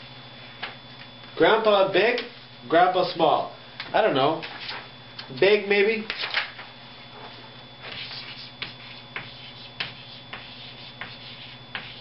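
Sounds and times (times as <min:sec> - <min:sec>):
faint steady hum: 0:00.0 - 0:12.0
marker writing on a board: 0:07.9 - 0:12.0.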